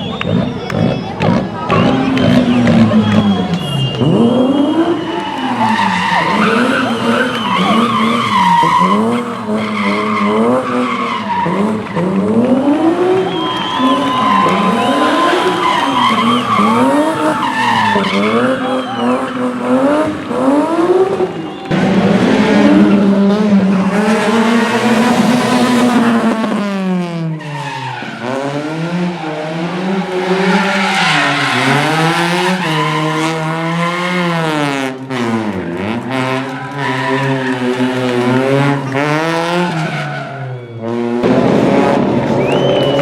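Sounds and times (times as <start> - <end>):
rally car engine revving: 0.0 - 43.0
tyres squealing: 1.7 - 12.0, 13.1 - 21.7.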